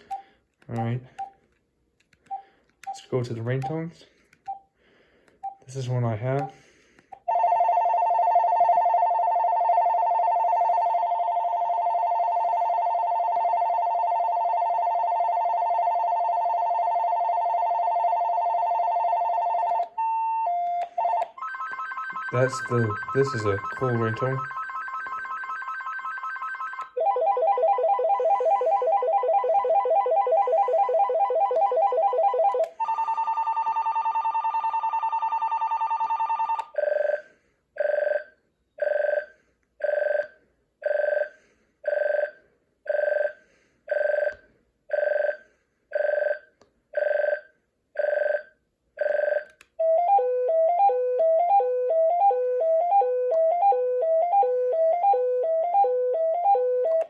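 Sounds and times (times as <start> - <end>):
electronic warbling ringtone: 7.3 - 36.6
repeating electronic melody: 27.0 - 32.6.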